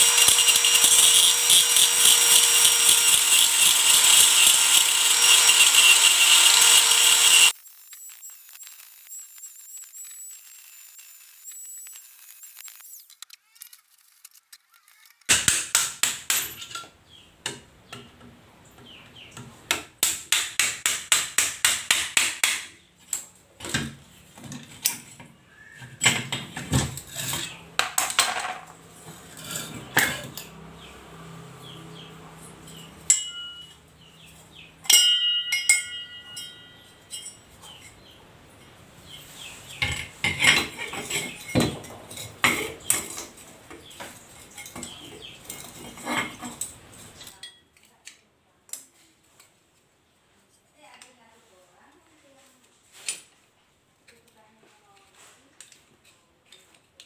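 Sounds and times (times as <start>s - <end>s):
knocks and clinks: 32.6s - 33.8s, 34.8s - 38.0s
tool tapping on metal: 32.8s - 33.8s, 34.8s - 37.8s.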